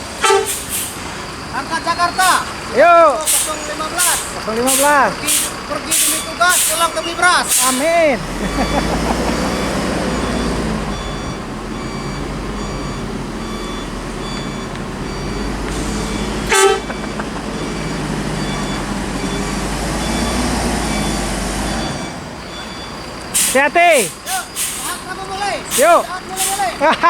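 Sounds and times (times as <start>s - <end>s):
bus engine rumbling: 0.0s - 27.0s
short horn toot: 0.2s - 0.9s, 15.8s - 16.9s.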